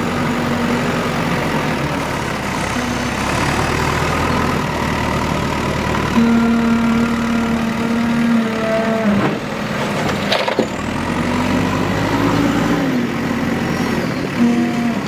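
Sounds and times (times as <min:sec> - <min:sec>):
diesel engine running under load: 0:00.0 - 0:15.0.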